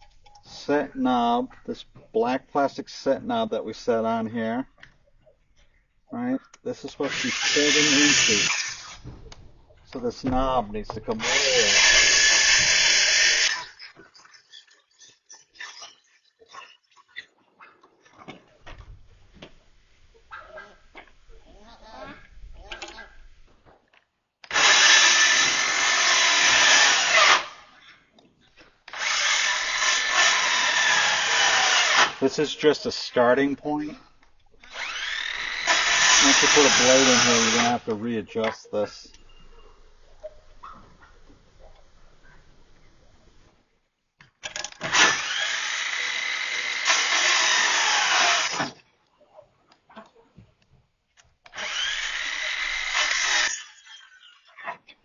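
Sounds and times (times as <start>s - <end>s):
power drill running: 6.9s - 9.1s, 11.1s - 13.8s, 24.5s - 27.7s, 28.9s - 32.4s, 34.6s - 37.9s, 44.8s - 48.8s, 51.5s - 54.0s.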